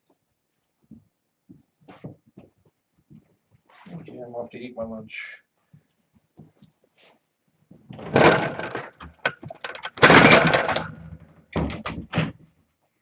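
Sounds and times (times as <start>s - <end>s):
clattering rustling bursts: 7.9s - 12.4s.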